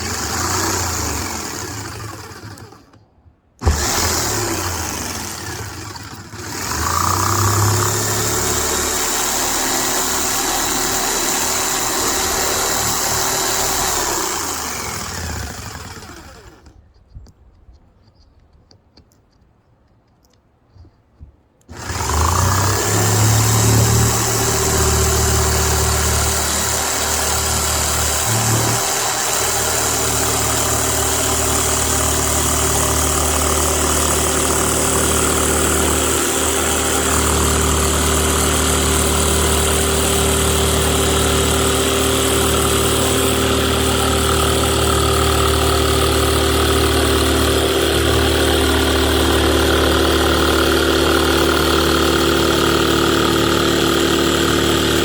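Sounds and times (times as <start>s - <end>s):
electric jigsaw cutting: 0.0s - 3.0s, 3.6s - 16.8s, 21.7s - 55.0s.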